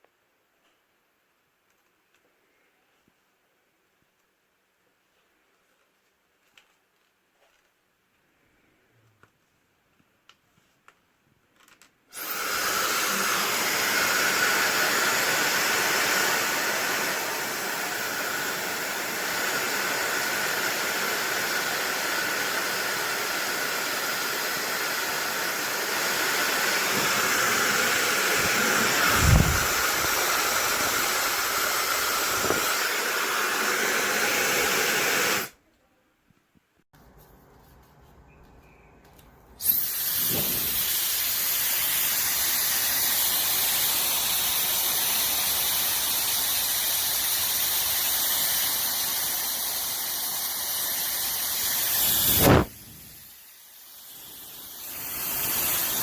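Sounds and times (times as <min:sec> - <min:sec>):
hair dryer blowing: 0:12.2 - 0:35.6, 0:39.6 - 0:56.0.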